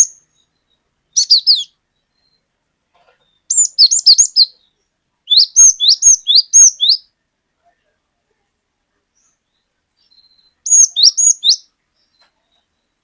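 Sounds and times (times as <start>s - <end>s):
bird whistling song: 0.0s - 2.5s, 3.2s - 7.1s, 9.2s - 13.0s.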